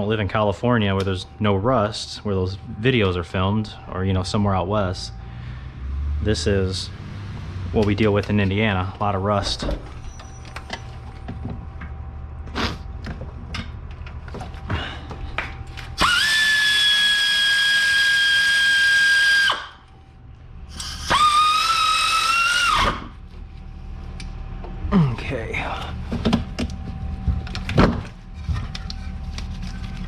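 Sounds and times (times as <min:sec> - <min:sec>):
cordless power tool whining: 0:15.9 - 0:17.2.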